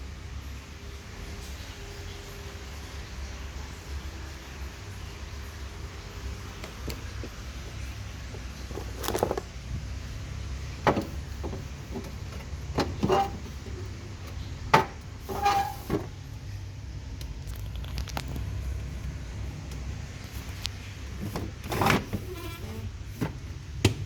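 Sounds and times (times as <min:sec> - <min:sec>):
refrigerator parts knocking and rattling: 0:06.5 - 0:16.3, 0:19.6 - 0:24.0.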